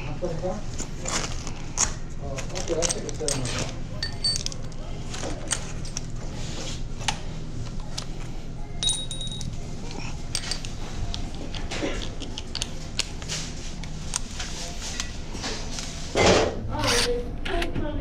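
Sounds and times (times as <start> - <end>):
steady low hum: 0.0 - 18.0
small metal items clinking: 2.4 - 6.1, 8.8 - 10.8.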